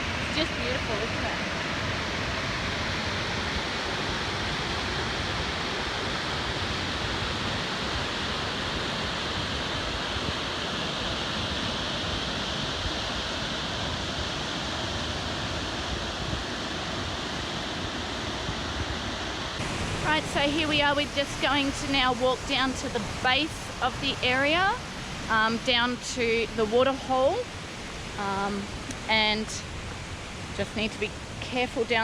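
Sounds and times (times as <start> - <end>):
waterfall rushing: 0.0 - 25.6.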